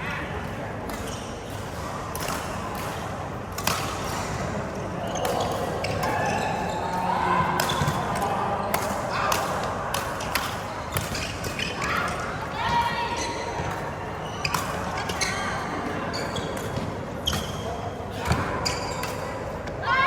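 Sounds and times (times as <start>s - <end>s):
people chattering: 0.0s - 20.0s
racket hitting shuttlecock: 0.9s - 4.6s, 7.6s - 12.3s.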